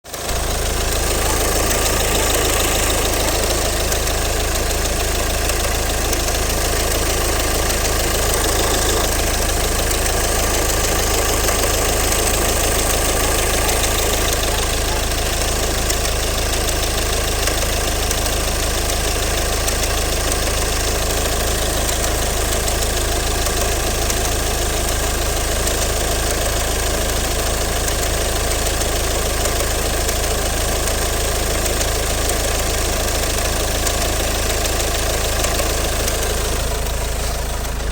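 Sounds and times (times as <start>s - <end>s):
diesel engine idling with knock: 0.1s - 37.9s.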